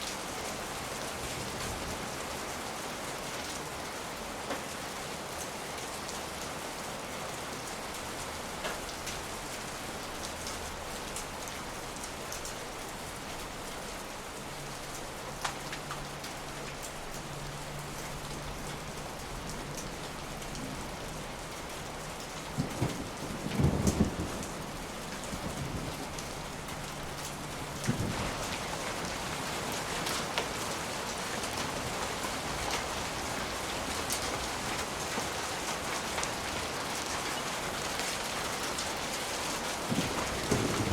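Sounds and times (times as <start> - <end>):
steady rain falling: 0.0 - 40.9
distant thunder rumbling: 22.4 - 30.7, 39.8 - 40.9.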